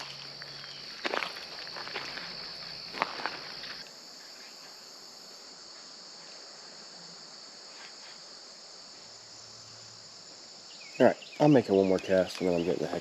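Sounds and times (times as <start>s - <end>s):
chorus of insects calling: 0.0s - 13.0s.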